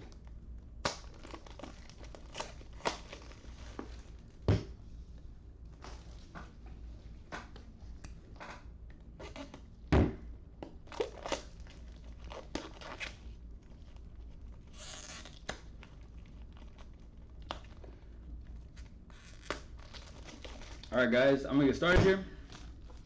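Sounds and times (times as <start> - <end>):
plastic packaging crinkling and tearing: 0.1 - 4.3, 10.8 - 21.0.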